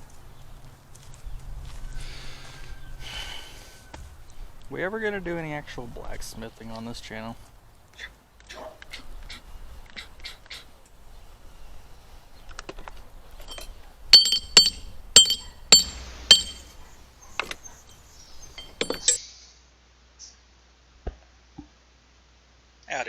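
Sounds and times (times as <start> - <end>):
sharp metallic clinks: 13.4 - 19.2.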